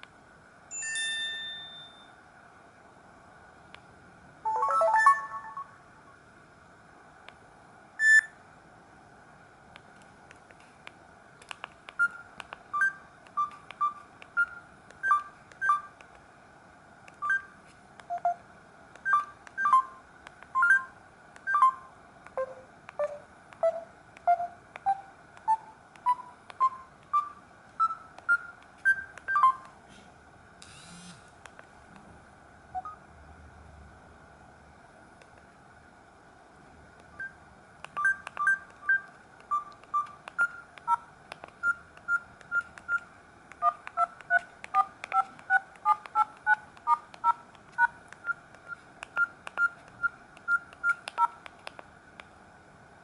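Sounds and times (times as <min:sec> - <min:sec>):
mobile phone beeps: 0:04.5 - 0:05.7, 0:08.0 - 0:08.3, 0:32.8 - 0:33.0, 0:38.0 - 0:43.0, 0:43.6 - 0:51.4.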